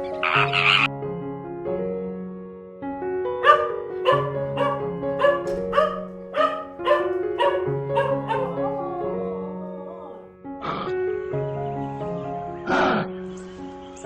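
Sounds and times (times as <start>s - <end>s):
dog barking: 3.4s - 10.2s.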